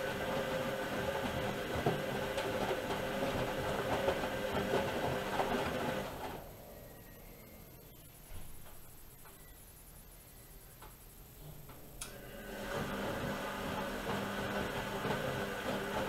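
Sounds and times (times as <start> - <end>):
washing machine running: 0.0 - 7.7, 11.6 - 16.0.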